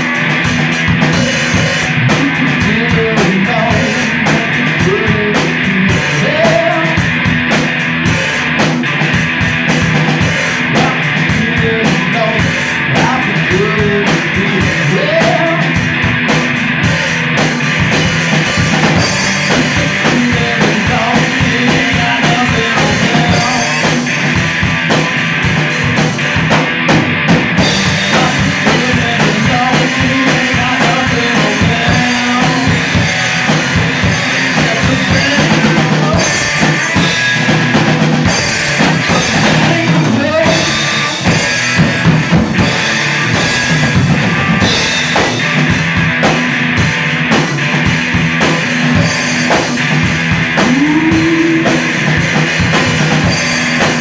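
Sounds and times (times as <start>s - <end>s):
bass guitar: 0.0s - 54.0s
distorted guitars: 0.0s - 54.0s
drum kit: 0.0s - 54.0s
person singing: 1.2s - 7.1s, 10.2s - 15.9s, 19.0s - 24.3s, 27.6s - 37.2s, 38.3s - 41.4s, 50.6s - 52.4s.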